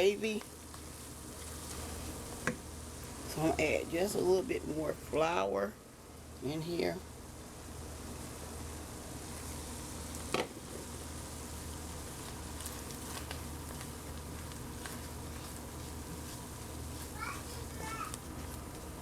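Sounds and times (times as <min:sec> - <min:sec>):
oil sizzling in a skillet: 0:00.0 - 0:04.0, 0:08.0 - 0:19.0.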